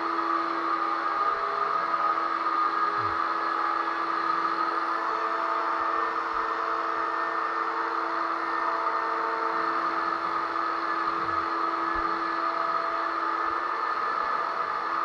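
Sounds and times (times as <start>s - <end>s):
drywall sander whirring: 0.0s - 15.0s.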